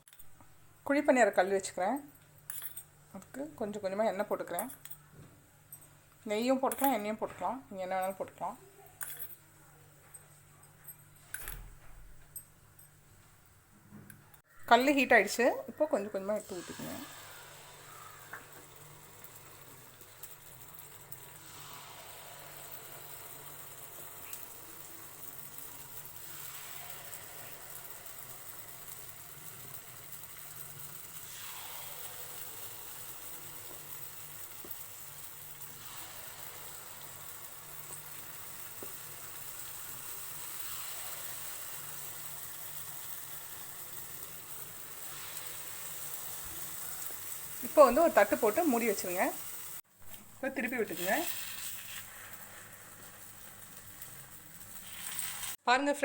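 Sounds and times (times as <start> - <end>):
batter sizzling in hot oil: 14.4 - 55.6.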